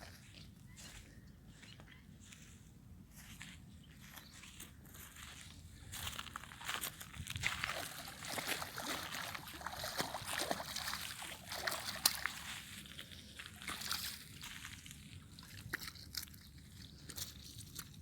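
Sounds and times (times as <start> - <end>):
water sloshing and splashing: 6.6 - 18.0.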